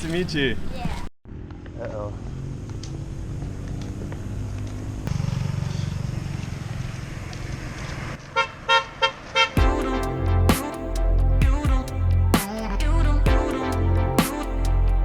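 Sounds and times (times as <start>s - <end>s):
motorbike engine revving: 1.3s - 8.1s.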